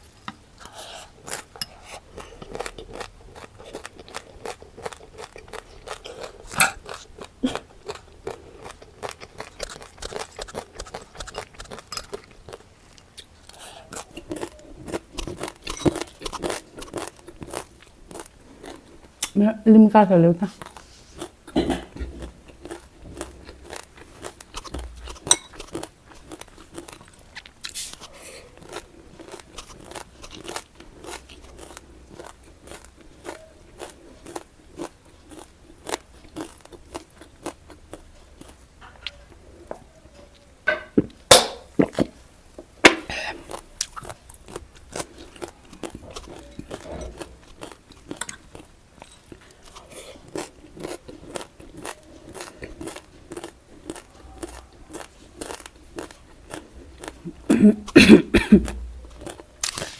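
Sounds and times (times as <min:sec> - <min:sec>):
crunching snack food: 0:58.7 - 0:59.9.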